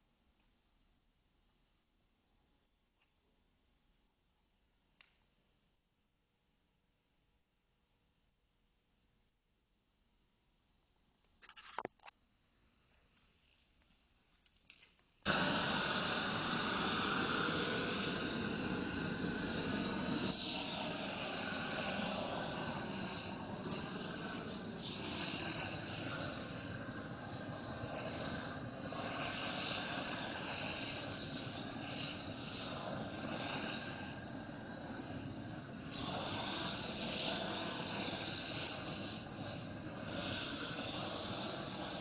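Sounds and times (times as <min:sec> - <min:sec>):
roofing torch hissing: 0:15.3 - 0:42.0.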